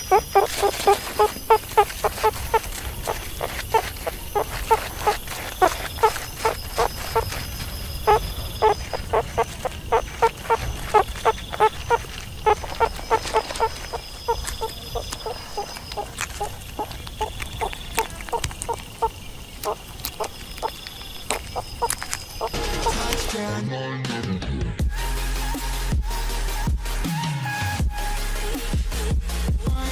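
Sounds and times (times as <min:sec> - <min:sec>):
meerkat chirping calls: 0:00.0 - 0:23.2.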